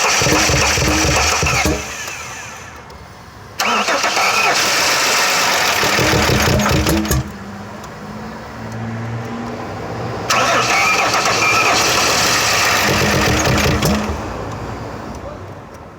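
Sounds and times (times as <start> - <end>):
engine low idle: 0.0 - 7.6, 10.3 - 14.6
engine cranking: 0.0 - 8.0, 10.3 - 14.7.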